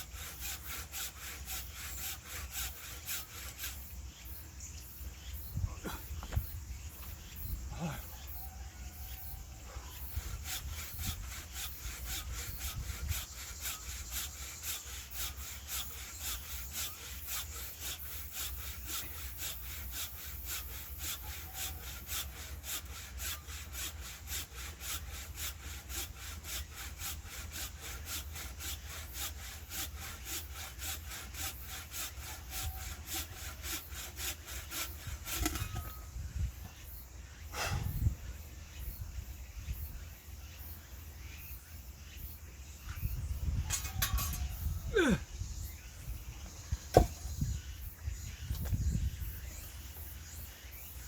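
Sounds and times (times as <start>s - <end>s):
hand saw cutting wood: 0.0s - 4.0s, 9.0s - 36.2s, 37.5s - 38.1s, 43.0s - 45.2s, 46.9s - 47.6s.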